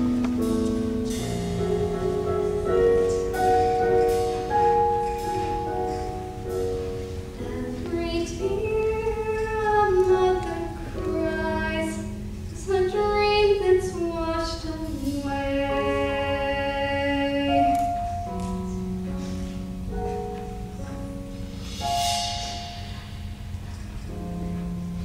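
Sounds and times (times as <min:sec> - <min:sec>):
orchestral accompaniment: 0:00.0 - 0:25.0
young woman singing ballad: 0:07.4 - 0:17.9.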